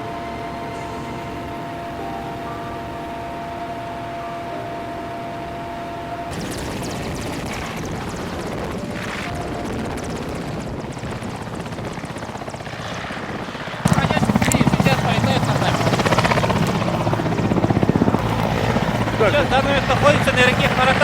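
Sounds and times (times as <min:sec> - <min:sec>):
helicopter rotor noise: 0:00.0 - 0:21.0.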